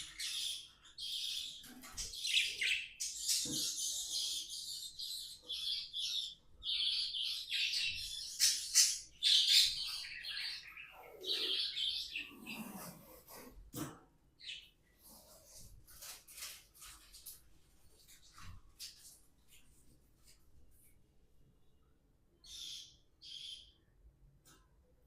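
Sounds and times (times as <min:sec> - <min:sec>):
budgerigars twittering: 0:00.0 - 0:13.2, 0:22.4 - 0:23.8.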